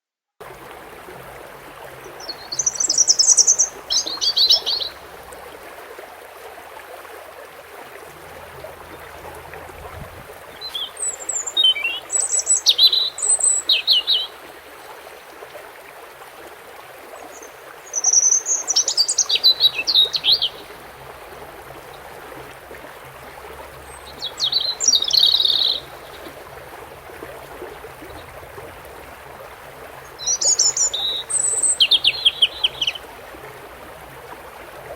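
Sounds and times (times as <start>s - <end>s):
running water hiss: 0.4s - 34.9s
bird twittering: 10.5s - 14.3s, 30.2s - 33.0s.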